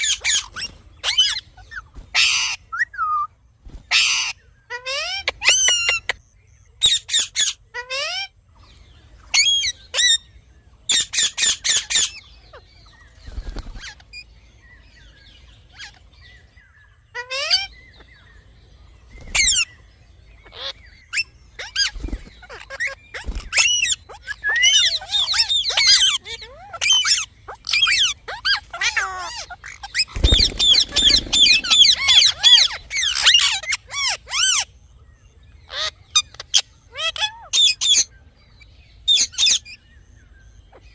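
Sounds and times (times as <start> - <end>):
parrots screeching and squawking: 0.0 - 3.2, 3.8 - 6.1, 6.8 - 8.3, 9.3 - 10.2, 10.9 - 14.3, 15.7 - 16.1, 17.1 - 17.8, 19.2 - 19.7, 20.4 - 34.7, 35.7 - 38.1, 39.1 - 39.8.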